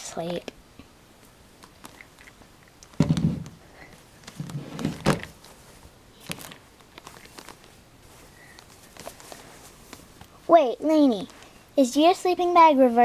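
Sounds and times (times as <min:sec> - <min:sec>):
dolls being handled: 0:01.5 - 0:11.8
soft bumps and rustles: 0:02.9 - 0:11.6.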